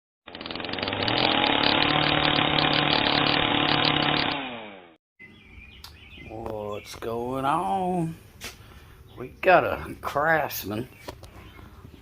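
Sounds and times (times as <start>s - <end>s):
small engine running: 0.3s - 5.0s.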